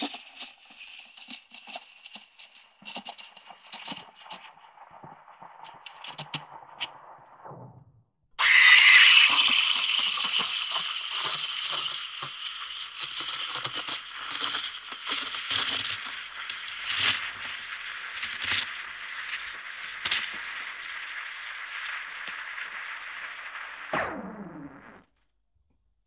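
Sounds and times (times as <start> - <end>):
coffee machine hissing: 8.4 - 23.9.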